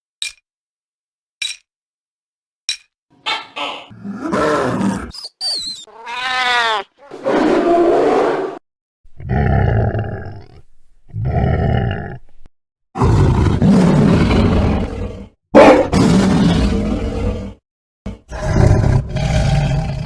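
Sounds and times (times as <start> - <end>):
tiger roaring: 3.9 - 5.2, 7.0 - 8.6, 9.2 - 12.2, 13.0 - 20.0.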